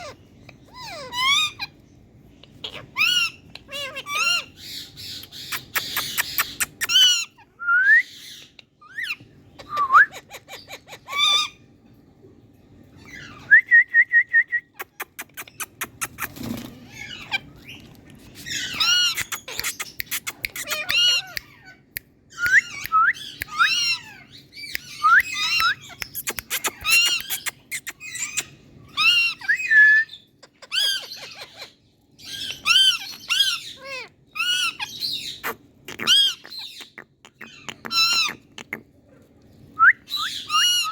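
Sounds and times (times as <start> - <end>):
parrots squawking and chirping: 0.0 - 11.8, 12.9 - 13.5, 14.7 - 40.9
parrot whistle: 28.1 - 31.5.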